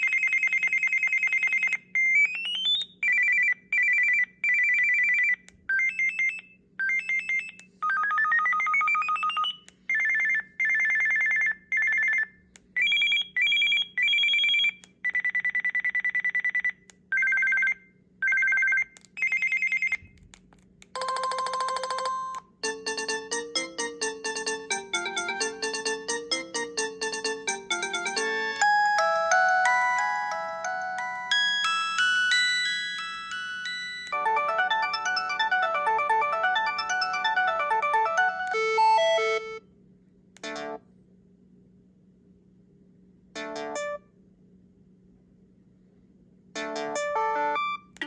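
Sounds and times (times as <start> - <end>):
electronic phone ringtone beeps: 0.0 - 20.0, 21.0 - 39.6, 47.2 - 47.9
multi-note ringtone melody: 21.0 - 39.6, 46.6 - 47.8.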